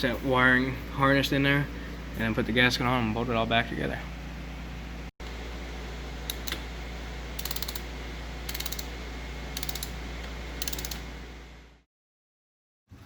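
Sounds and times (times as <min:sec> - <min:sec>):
ratchet wrench clicking: 0:07.4 - 0:07.9, 0:08.5 - 0:08.9, 0:09.6 - 0:10.0, 0:10.6 - 0:11.0.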